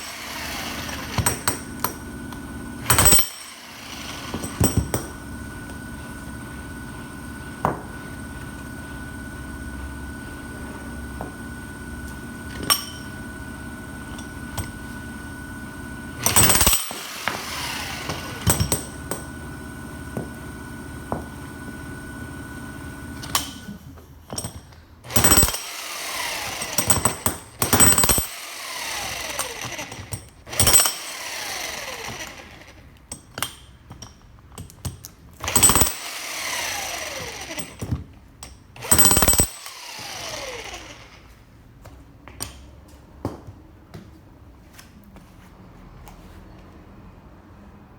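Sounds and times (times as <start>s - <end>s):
motor winding down: 0.0s - 4.8s, 15.3s - 20.0s, 25.1s - 33.0s, 35.4s - 37.9s, 38.8s - 41.4s
demolition hammer running: 0.0s - 33.5s, 35.4s - 41.4s.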